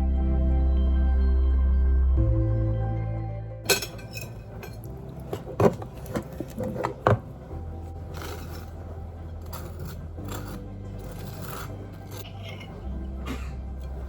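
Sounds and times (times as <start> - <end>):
household knocks and clatters: 3.7 - 12.9.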